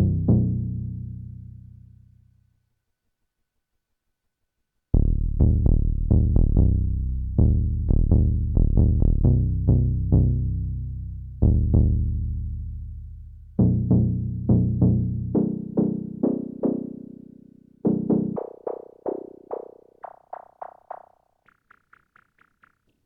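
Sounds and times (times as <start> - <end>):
synthesizer bass line: 18.2 - 22.8.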